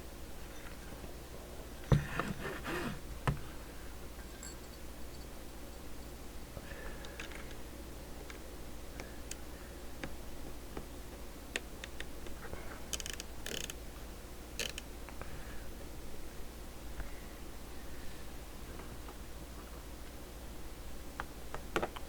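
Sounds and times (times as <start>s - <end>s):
plastic knobs clicking: 11.5s - 13.8s, 14.6s - 14.9s.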